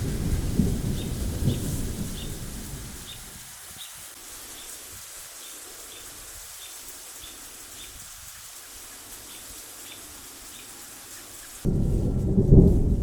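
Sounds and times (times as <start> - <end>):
thunder claps: 0.0 - 3.3, 11.7 - 13.0
rain falling: 0.0 - 13.0.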